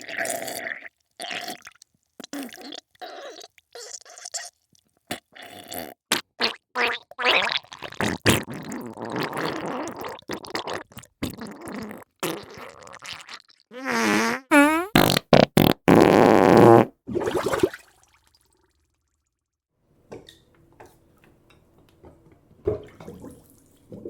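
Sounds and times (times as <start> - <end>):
wet sputtering farts: 5.1 - 17.7.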